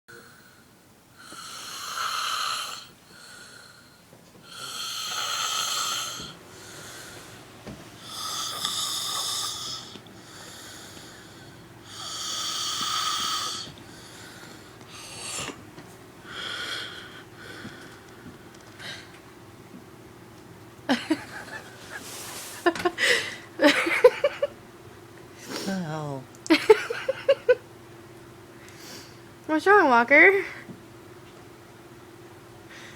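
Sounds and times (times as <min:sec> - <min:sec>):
loud high-pitched snoring: 0:01.2 - 0:03.9, 0:04.5 - 0:06.4, 0:08.0 - 0:13.7.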